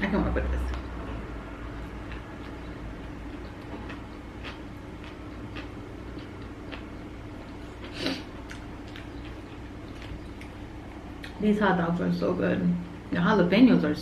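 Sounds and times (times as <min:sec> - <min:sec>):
person chewing with wet mouth clicks: 0:02.0 - 0:10.6.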